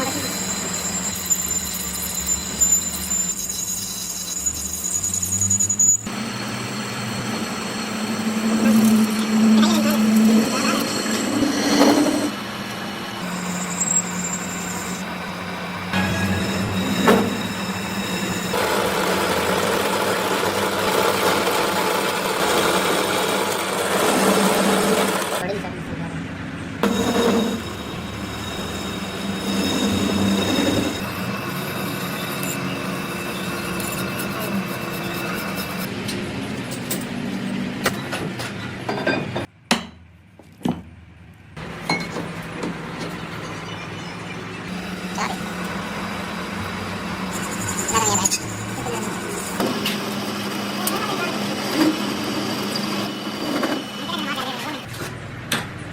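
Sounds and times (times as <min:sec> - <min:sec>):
loud rough machine noise: 0:00.0 - 0:25.6, 0:26.2 - 0:38.0, 0:41.6 - 0:55.4
shop machinery humming: 0:00.0 - 0:39.5, 0:41.4 - 0:55.9
machine hum: 0:41.6 - 0:54.9.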